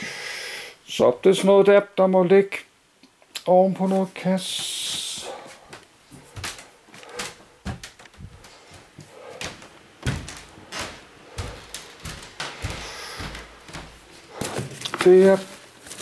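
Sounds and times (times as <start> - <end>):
rustling of bags: 4.7 - 16.0
knocks and bumps of objects: 9.4 - 14.8.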